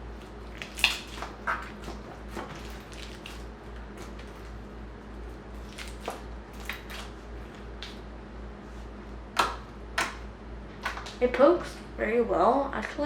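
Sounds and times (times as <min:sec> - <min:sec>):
slime squishing: 0:00.0 - 0:08.0.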